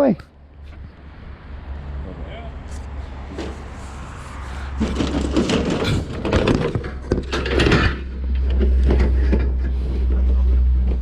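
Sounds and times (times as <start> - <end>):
junk clattering and scraping: 3.2 - 11.0.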